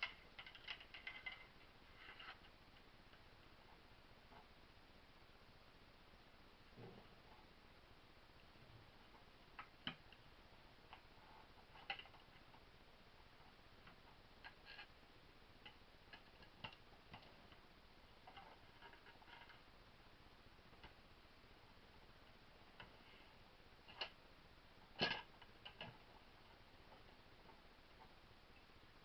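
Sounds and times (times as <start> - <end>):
small metal parts clicking: 0.0 - 2.6, 10.9 - 12.7, 15.6 - 19.7, 23.8 - 24.2, 24.8 - 28.7.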